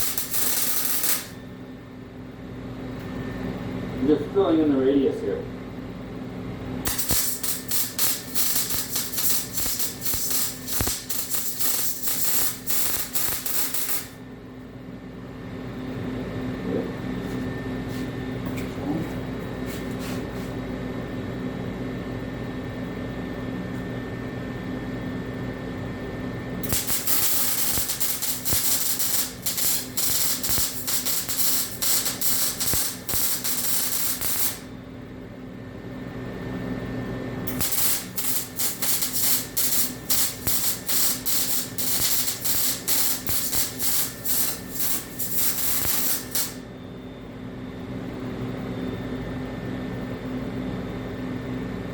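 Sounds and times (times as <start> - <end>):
welding arc crackling: 0.0 - 1.4, 6.8 - 14.2, 26.6 - 34.7, 37.5 - 46.6
steady low hum: 0.0 - 51.9.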